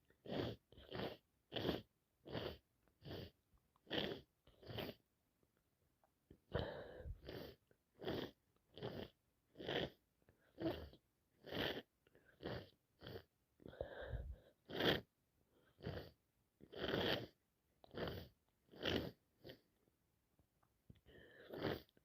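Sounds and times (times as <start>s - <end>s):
congested nose sniffing: 0.2s - 5.0s, 6.6s - 10.0s, 10.6s - 13.3s, 14.7s - 15.1s, 15.7s - 19.6s, 21.2s - 22.0s.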